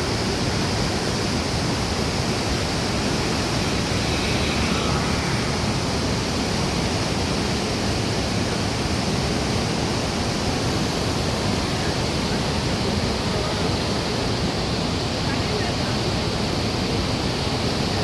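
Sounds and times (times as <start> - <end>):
water rushing through sluice gates: 0.0 - 18.0.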